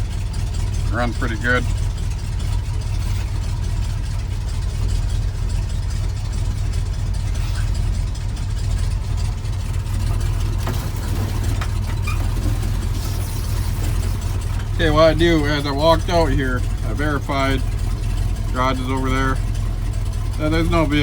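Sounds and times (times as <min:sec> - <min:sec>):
engine idling: 0:00.0 - 0:21.0.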